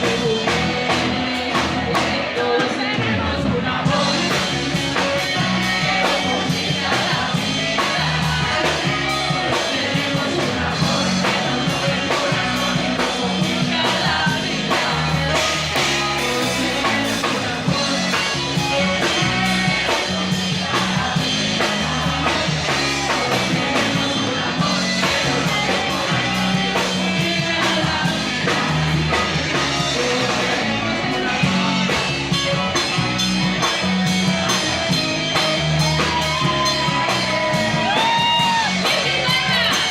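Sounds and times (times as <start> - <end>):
person singing: 0.0 - 39.9
rock band guitar and drums: 0.0 - 39.9.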